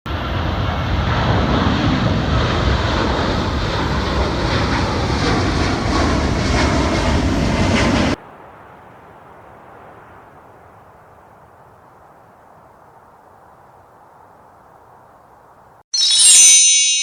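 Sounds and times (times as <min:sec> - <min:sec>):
airplane engine roar: 0:00.1 - 0:08.2.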